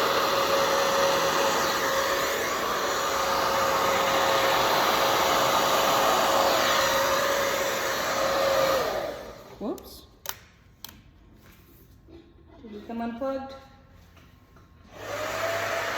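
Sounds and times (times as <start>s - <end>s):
hair dryer running: 0.0s - 9.8s, 14.9s - 15.9s.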